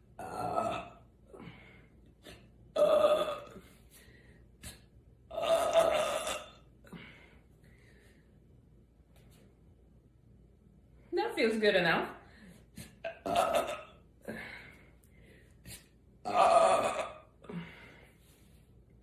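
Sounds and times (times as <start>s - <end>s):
woman belching loudly: 0.2s - 1.0s, 2.8s - 3.6s, 5.3s - 6.6s, 13.1s - 14.0s, 16.3s - 17.3s.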